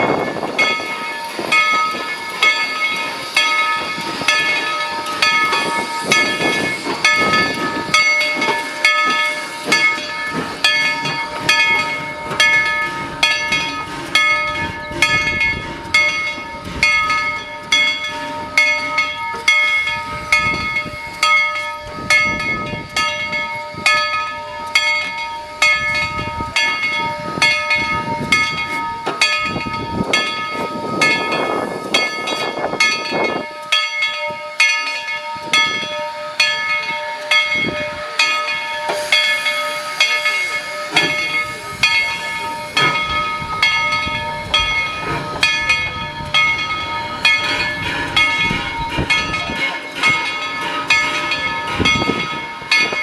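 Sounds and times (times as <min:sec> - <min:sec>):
steam hiss: 0:00.0 - 0:23.9, 0:24.6 - 0:53.0
steam train chugging: 0:00.0 - 0:53.0.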